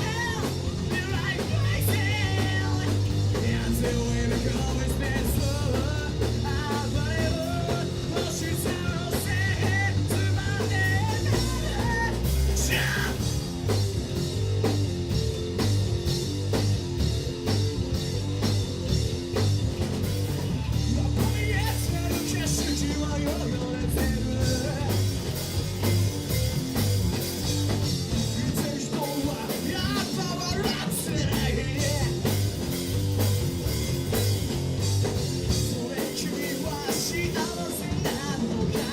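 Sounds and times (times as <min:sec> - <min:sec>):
person singing: 0:00.0 - 0:13.3, 0:20.9 - 0:25.2, 0:28.2 - 0:32.3, 0:35.8 - 0:38.9
drum kit: 0:00.0 - 0:38.9
electric guitar: 0:00.0 - 0:38.9.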